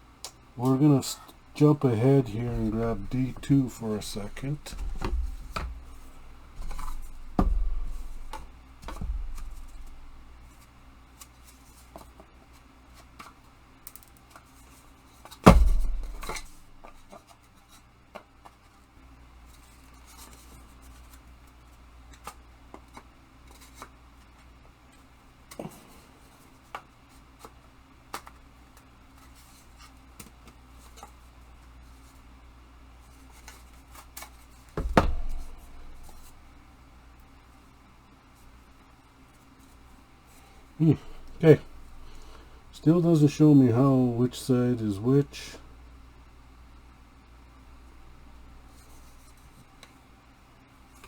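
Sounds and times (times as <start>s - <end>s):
heavier knocks: 2.2s - 10.5s, 15.5s - 17.0s, 34.8s - 36.5s, 40.9s - 42.8s.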